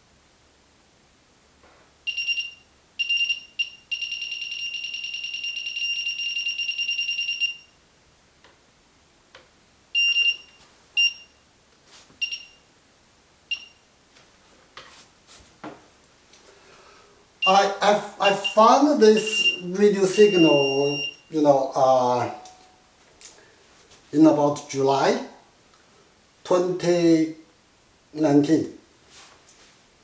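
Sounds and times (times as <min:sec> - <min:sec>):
signal detector beeping: 0:02.1 - 0:07.7, 0:10.0 - 0:11.4, 0:12.2 - 0:12.6, 0:17.4 - 0:22.8.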